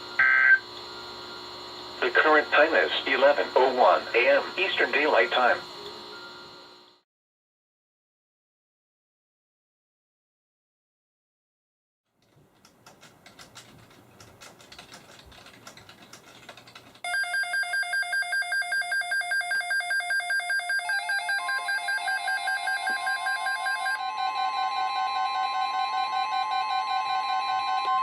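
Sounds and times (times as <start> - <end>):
steady alarm tone: 17.0 - 28.0.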